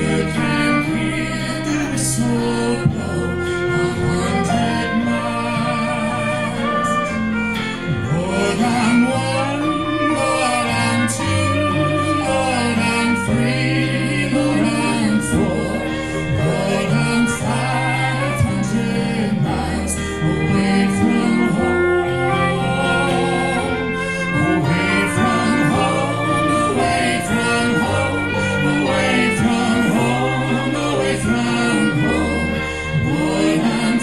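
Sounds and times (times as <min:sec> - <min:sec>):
string instruments: 0:00.0 - 0:34.0
voices singing in harmony: 0:00.0 - 0:34.0.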